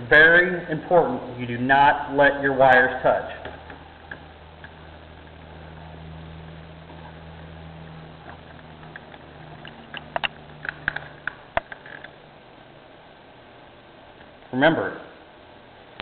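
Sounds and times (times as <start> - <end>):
steady low hum: 0.0 - 16.0
hands clicking and tapping wires: 8.2 - 12.2.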